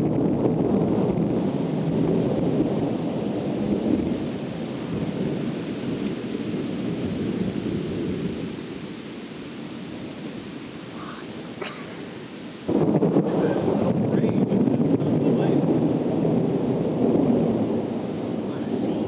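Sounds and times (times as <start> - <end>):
rolling thunder: 0.0 - 19.0.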